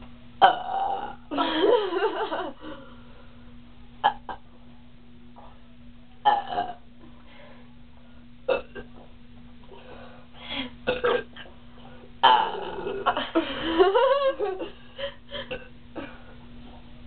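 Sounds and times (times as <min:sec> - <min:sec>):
girls burping: 0:12.2 - 0:13.3.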